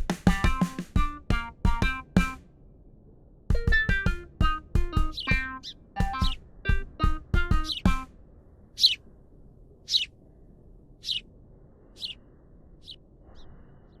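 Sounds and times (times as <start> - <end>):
plucked music jingle: 0.3 - 2.4, 3.5 - 8.1
high bird-like chirp: 3.6 - 8.1, 8.8 - 9.0.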